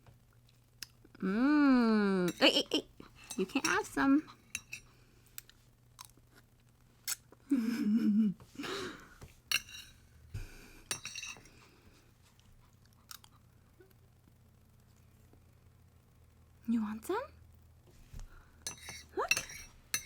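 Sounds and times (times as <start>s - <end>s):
person humming: 1.2s - 2.3s.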